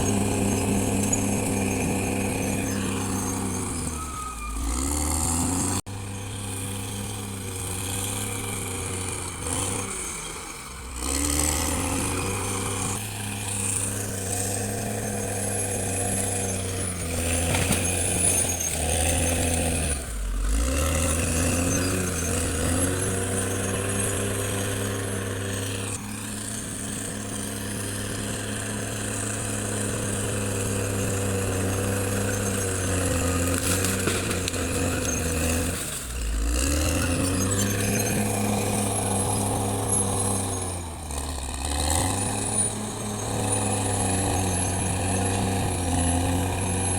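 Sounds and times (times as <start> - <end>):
bulldozer diesel engine working: 0.0 - 46.9.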